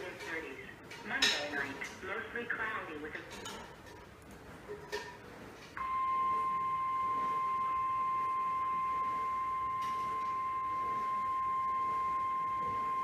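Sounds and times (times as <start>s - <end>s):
steady high alarm tone: 5.8s - 13.0s.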